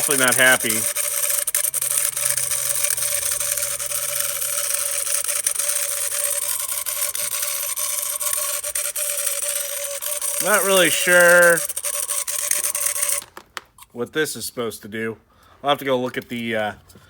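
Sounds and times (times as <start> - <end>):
water pump buzzing and hissing: 0.0 - 13.2.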